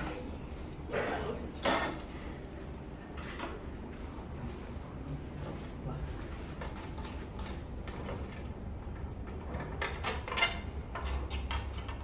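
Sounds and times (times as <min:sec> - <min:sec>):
clicks and knocks of chair parts: 0:01.5 - 0:02.1, 0:06.5 - 0:12.0.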